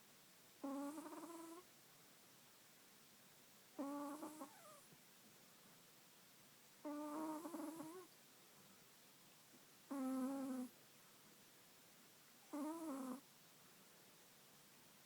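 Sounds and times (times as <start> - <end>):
dog snoring: 0.6 - 1.7, 3.8 - 4.8, 6.8 - 8.1, 9.9 - 10.7, 12.4 - 13.2.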